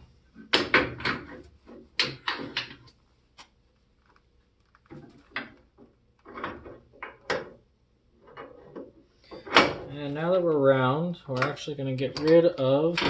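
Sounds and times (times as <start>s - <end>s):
knocks of parts being handled: 0.4s - 2.9s.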